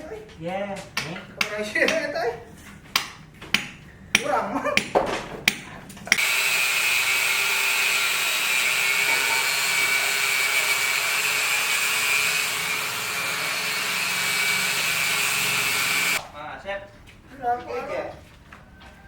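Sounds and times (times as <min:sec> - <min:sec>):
knocks: 0:02.9 - 0:06.2
power tool whining: 0:06.2 - 0:16.2.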